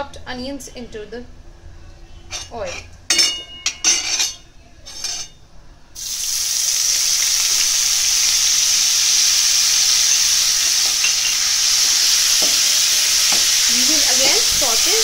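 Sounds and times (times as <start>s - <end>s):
onions sizzling in hot oil: 6.0s - 15.0s.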